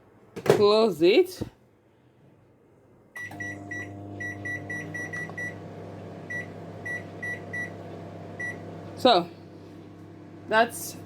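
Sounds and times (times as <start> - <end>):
keypad beeps: 3.2 - 5.6
microwave oven humming: 3.2 - 11.0.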